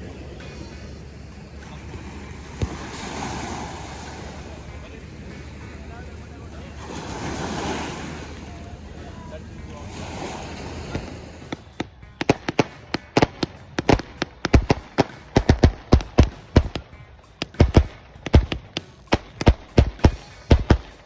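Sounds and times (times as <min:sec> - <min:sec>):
fireworks bangs: 0:08.4 - 0:21.0.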